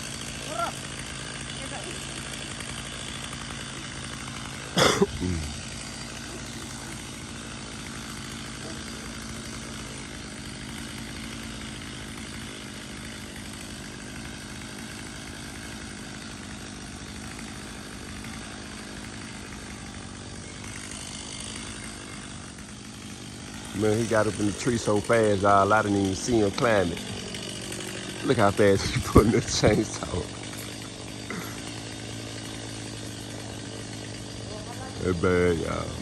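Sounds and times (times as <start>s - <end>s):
chainsaw running: 0.0s - 36.0s.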